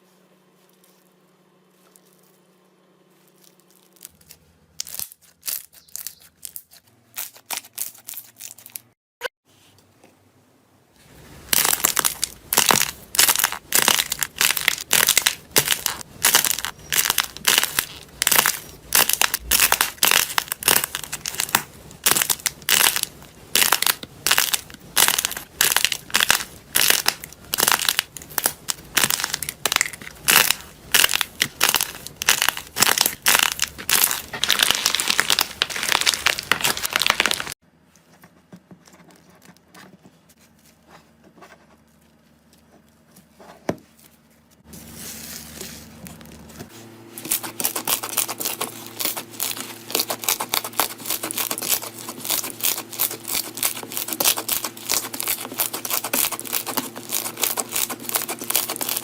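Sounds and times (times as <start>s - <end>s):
slime crackling as squeezed: 3.3s - 8.9s, 11.5s - 37.6s, 47.3s - 59.0s.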